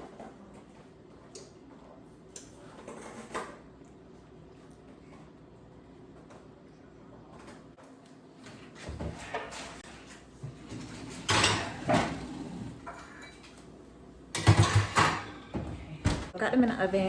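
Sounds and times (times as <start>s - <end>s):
metal pans clattering: 8.9s - 13.6s, 14.3s - 16.3s.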